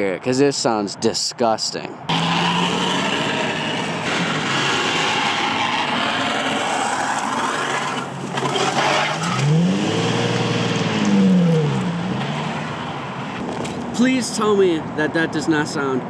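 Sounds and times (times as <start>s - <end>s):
plastic scraping on road: 2.9s - 13.9s.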